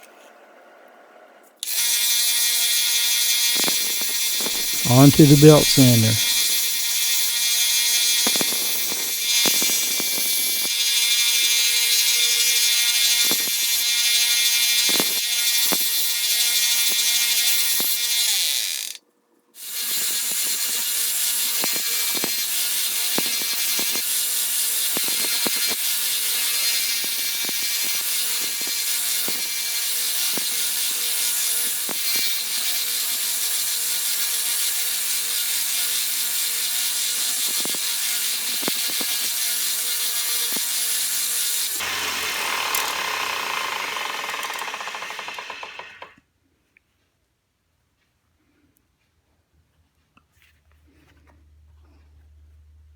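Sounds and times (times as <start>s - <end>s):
metal scraping on sanding belt: 1.8s - 19.0s
belt sander humming: 4.4s - 6.5s, 41.2s - 46.2s.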